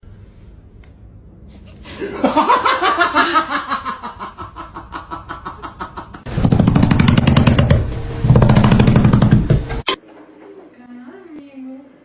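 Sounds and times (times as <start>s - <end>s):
person laughing hard: 1.9s - 6.3s.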